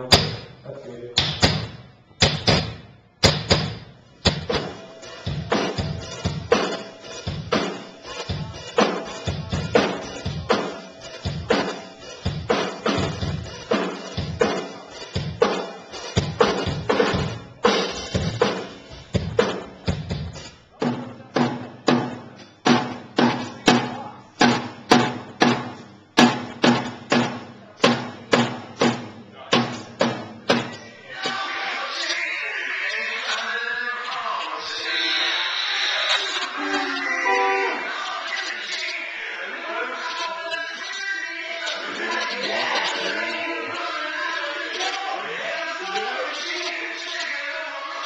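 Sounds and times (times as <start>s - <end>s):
drum kit strikes: 0.0s - 0.6s, 1.2s - 31.4s.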